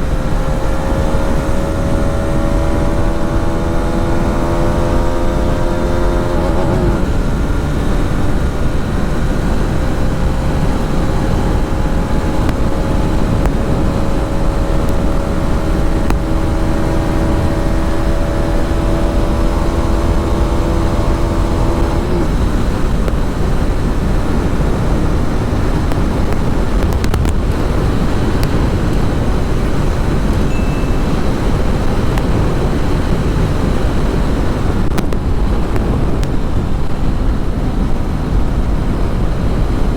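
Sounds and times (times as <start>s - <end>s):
motorcycle engine running: 0.0s - 39.9s
wind and road rumble: 0.0s - 39.9s.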